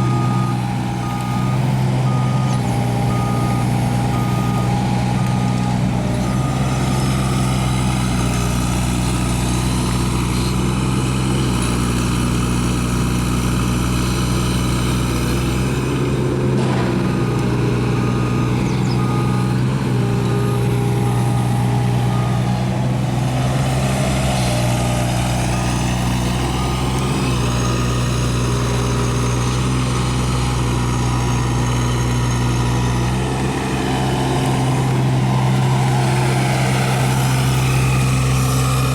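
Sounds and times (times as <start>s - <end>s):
excavator diesel engine running: 0.0s - 38.9s.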